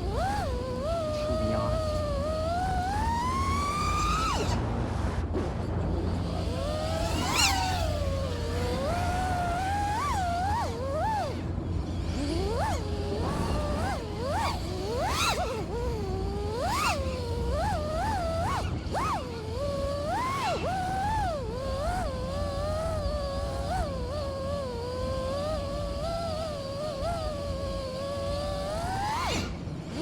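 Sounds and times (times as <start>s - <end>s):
steady low rumble: 0.0s - 3.6s, 4.6s - 7.1s
quadcopter motors whining: 0.0s - 30.0s.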